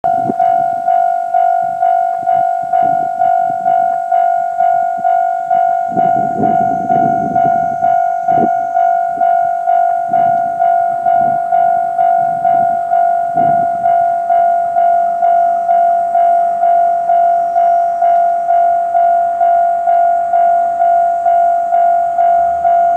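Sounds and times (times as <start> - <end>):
freight train rumbling and clattering: 0.0 - 17.8
level crossing bell clanging: 0.1 - 22.9.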